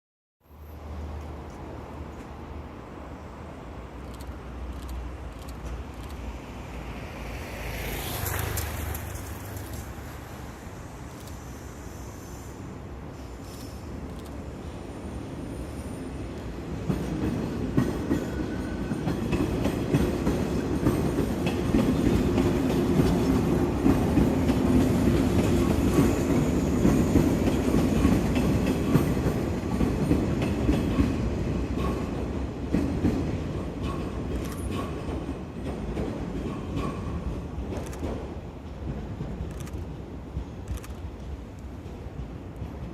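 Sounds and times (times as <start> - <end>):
train wheels clattering over rail joints: 16.7 - 42.9.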